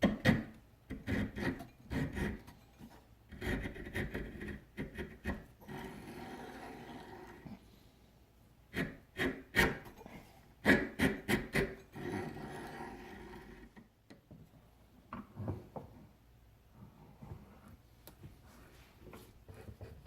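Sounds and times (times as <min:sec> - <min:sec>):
file rasping across steel: 0:00.2 - 0:02.7, 0:03.3 - 0:07.4, 0:08.7 - 0:10.0, 0:10.6 - 0:13.7.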